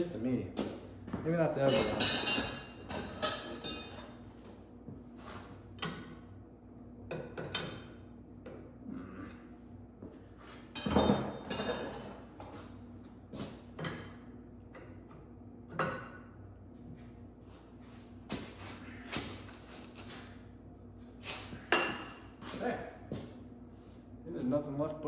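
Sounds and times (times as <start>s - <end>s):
hand tools clinking and knocking: 1.6s - 4.0s.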